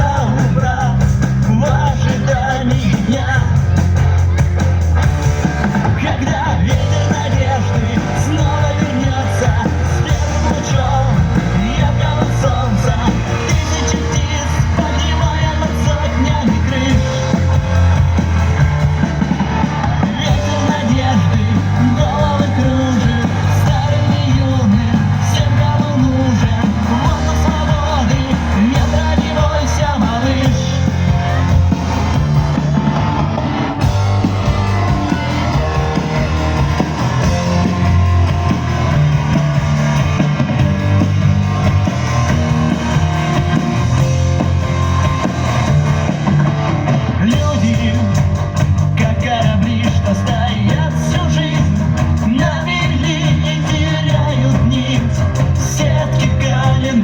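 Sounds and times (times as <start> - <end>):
person singing: 0.0 - 4.3, 5.7 - 18.6, 19.3 - 32.2, 47.1 - 57.0
live rock band playing: 0.0 - 57.0.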